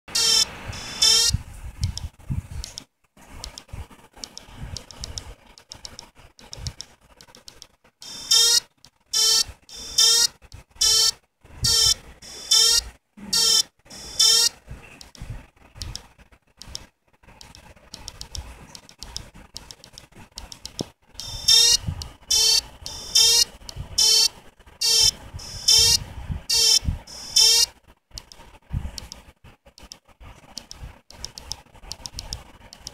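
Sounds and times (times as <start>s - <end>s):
short buzzy electronic beeps: 0.1s - 1.4s, 8.0s - 14.6s, 21.2s - 27.7s.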